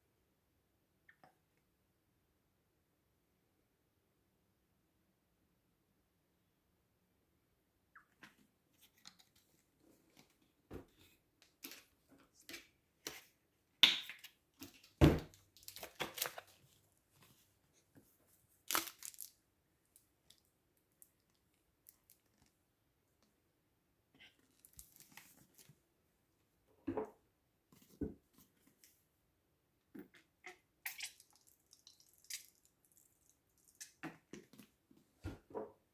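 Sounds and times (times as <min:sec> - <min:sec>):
wrapping crinkling and tearing: 0:18.7 - 0:19.4.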